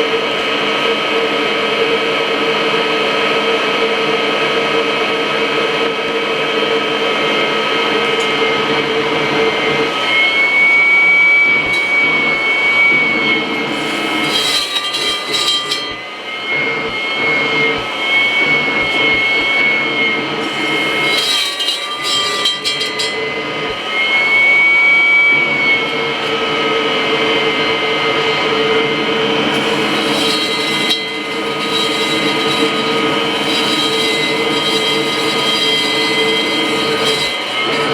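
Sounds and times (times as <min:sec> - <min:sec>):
vacuum cleaner hum: 0:06.5 - 0:21.6
wavering whistle: 0:09.4 - 0:28.2.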